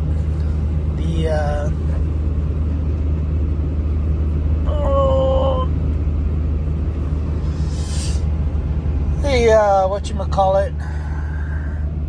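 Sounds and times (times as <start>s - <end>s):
diesel pickup rumble inside cab: 0.0s - 12.0s
short hiss: 7.3s - 8.4s.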